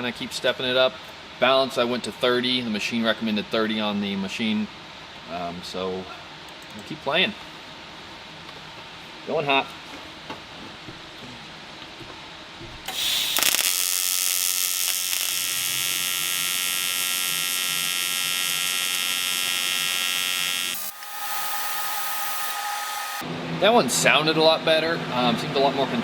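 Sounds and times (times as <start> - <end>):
welding arc buzzing: 12.9 - 23.2.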